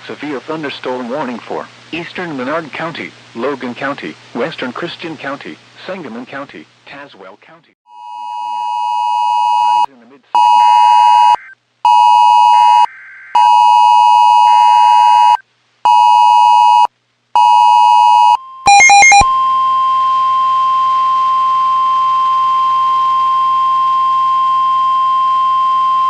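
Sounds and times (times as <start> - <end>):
harsh two-pitch phone beep: 7.9 - 19.5
steady warning alarm tone: 7.9 - 26.0.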